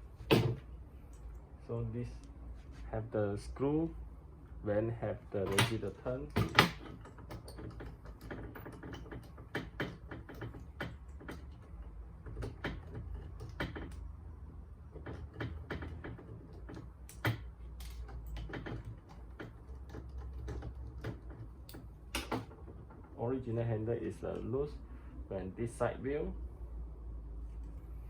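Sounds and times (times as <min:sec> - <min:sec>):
metal lock hardware clicking: 0:05.4 - 0:14.1, 0:15.0 - 0:22.6.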